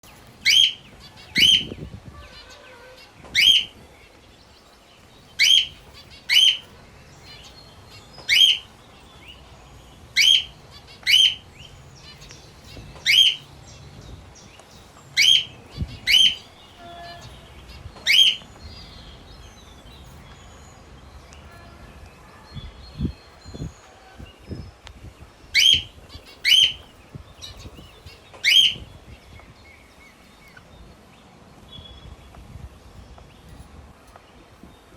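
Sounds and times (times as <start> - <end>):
parrot shrill calls: 0.4 - 3.8, 5.4 - 7.6, 8.3 - 8.7, 10.2 - 11.5, 13.0 - 13.5, 15.2 - 17.4, 18.0 - 18.4, 25.5 - 26.8, 28.4 - 28.9.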